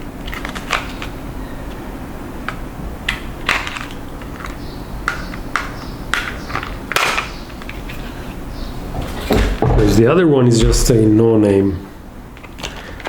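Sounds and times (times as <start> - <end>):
low hum: 10.6 - 11.3.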